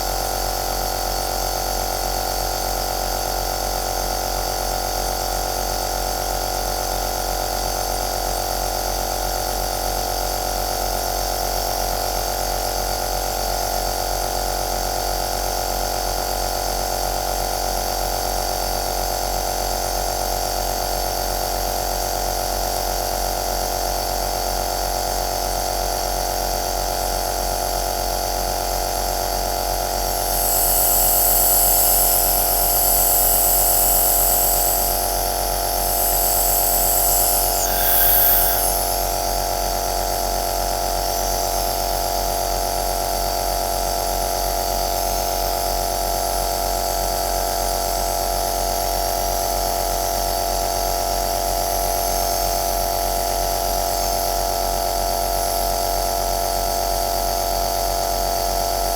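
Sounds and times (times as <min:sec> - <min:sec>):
nebulizer motor humming: 0:29.8 - 0:39.8
loud high hiss: 0:29.9 - 0:39.8.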